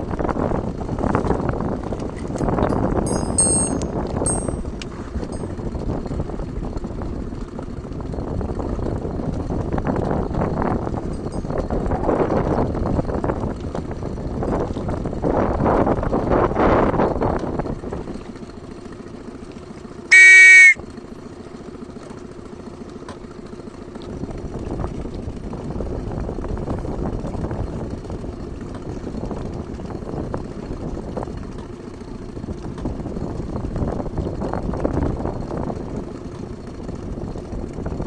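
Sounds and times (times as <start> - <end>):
wind: 0.0 - 38.0
water noise: 0.9 - 7.4
loud air horn blast: 20.1 - 20.8.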